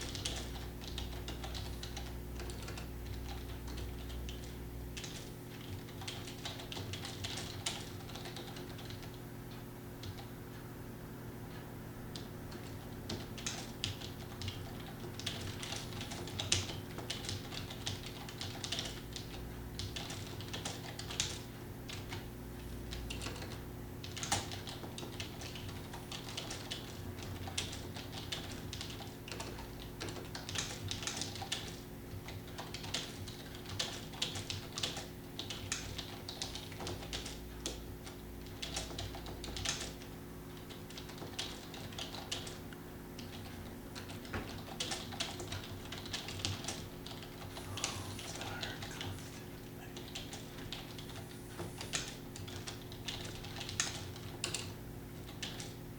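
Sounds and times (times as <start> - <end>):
typing on computer keyboard: 0.0 - 10.3, 12.1 - 22.3, 22.9 - 42.6, 43.2 - 49.2, 50.0 - 55.8
steady low hum: 0.0 - 55.9.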